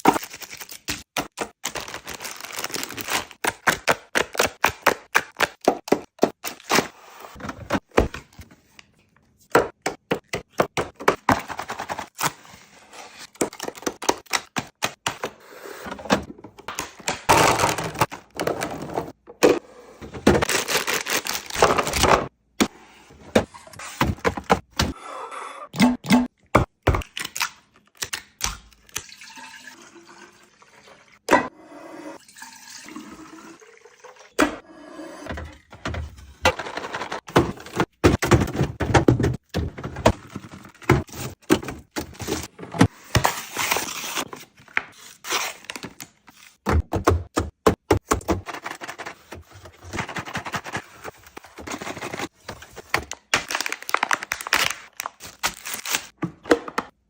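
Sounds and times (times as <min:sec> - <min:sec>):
hard objects knocking and clattering: 0:35.3 - 0:42.9.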